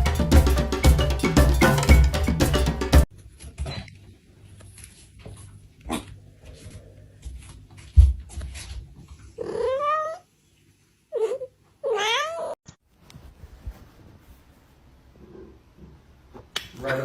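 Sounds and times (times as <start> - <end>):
cat meowing: 9.4 - 10.3, 11.1 - 12.6.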